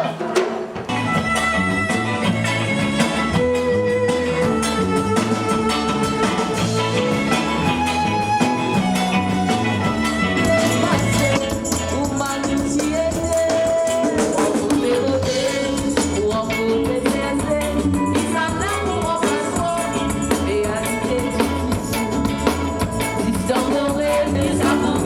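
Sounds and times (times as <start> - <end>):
live band playing upbeat song: 0.0 - 25.0
person singing: 6.3 - 25.0.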